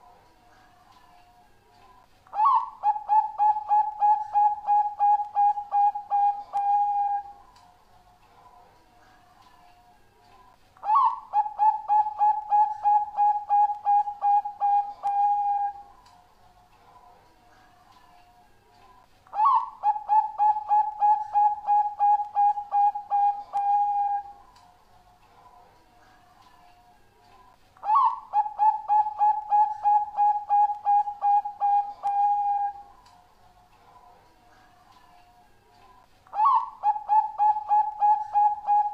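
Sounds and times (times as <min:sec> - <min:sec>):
dove cooing: 0:02.3 - 0:07.4, 0:10.8 - 0:15.9, 0:19.3 - 0:24.4, 0:27.8 - 0:32.9, 0:36.3 - 0:38.9.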